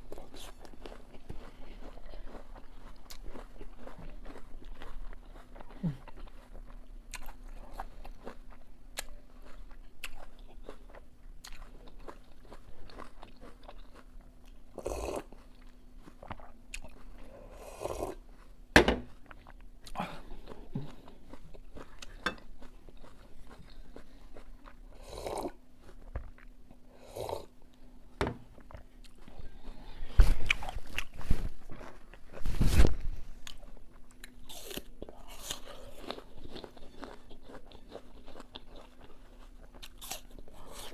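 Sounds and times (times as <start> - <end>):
faint steady hum: 0.0 - 40.9
biting and chewing apple: 0.1 - 17.3, 28.6 - 40.9.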